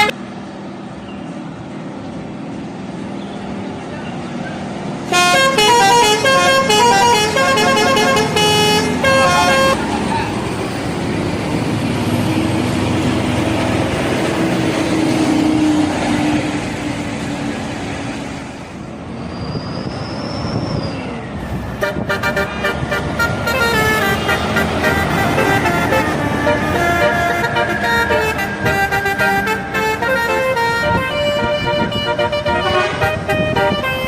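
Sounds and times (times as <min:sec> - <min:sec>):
passing vehicle: 0:00.0 - 0:34.0
bus horn playing a tune: 0:05.1 - 0:09.9, 0:21.7 - 0:34.0.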